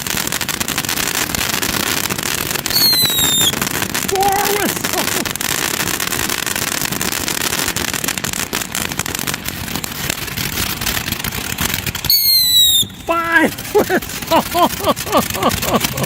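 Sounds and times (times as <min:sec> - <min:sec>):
fountain firework crackling and popping: 0:00.0 - 0:16.0
firework whistle: 0:02.6 - 0:05.4, 0:11.9 - 0:15.8.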